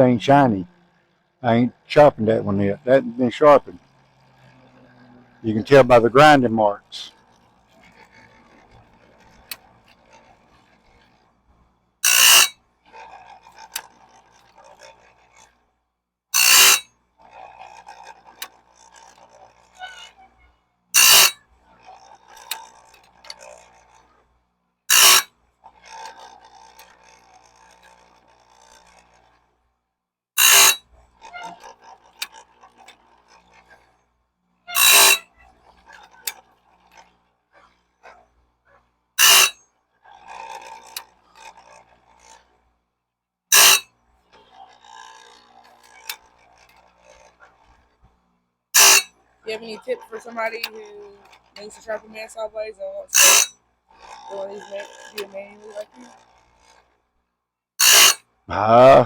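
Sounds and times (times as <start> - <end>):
quiet scraping and clicks: 0.0 - 29.8, 30.4 - 58.5
sharpener grinding blade teeth: 12.0 - 15.5, 16.4 - 20.2, 21.0 - 24.0, 24.9 - 29.3, 30.4 - 33.8, 34.7 - 37.1, 39.2 - 42.4, 43.5 - 43.9, 48.8 - 52.2, 53.0 - 56.9, 57.8 - 58.2.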